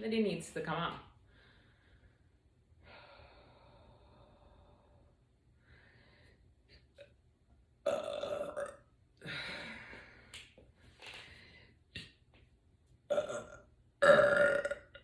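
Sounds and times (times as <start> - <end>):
woman burping: 7.9 - 9.4, 13.1 - 15.0.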